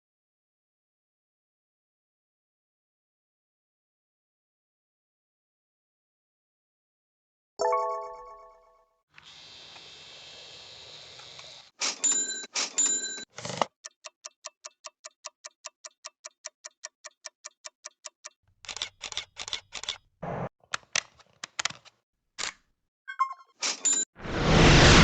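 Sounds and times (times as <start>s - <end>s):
fast even ticking: 13.8s - 18.4s.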